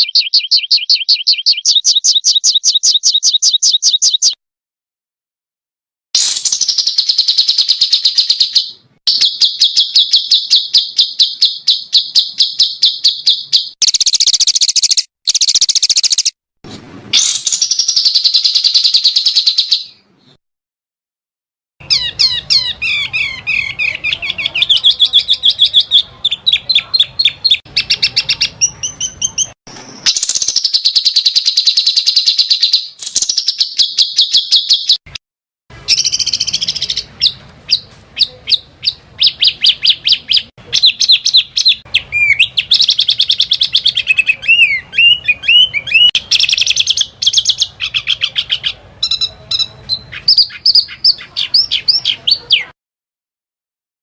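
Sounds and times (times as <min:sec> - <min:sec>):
songbirds trilling and chattering: 0:21.8 - 0:35.0, 0:35.8 - 0:52.8.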